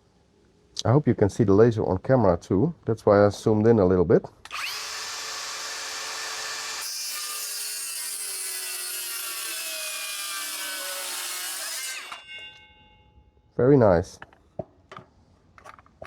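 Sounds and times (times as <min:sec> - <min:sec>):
circular saw cutting wood: 0:04.5 - 0:12.6
saw blade spinning down: 0:04.5 - 0:12.6.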